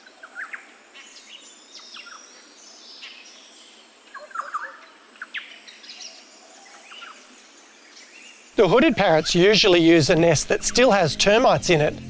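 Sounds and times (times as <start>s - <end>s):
birds chirping: 0.2s - 12.0s.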